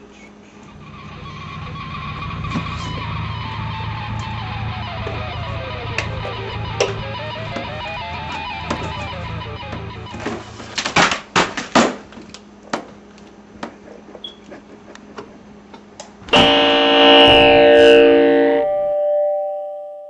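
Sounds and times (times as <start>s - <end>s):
distorted electric guitar music: 0.7s - 10.7s, 16.3s - 20.0s.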